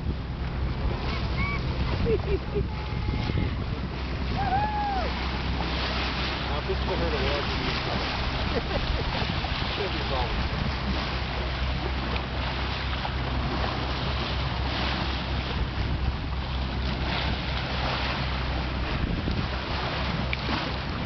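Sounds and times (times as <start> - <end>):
water rushing along a hull: 0.0 - 21.0
wind buffeting the microphone: 0.0 - 21.0.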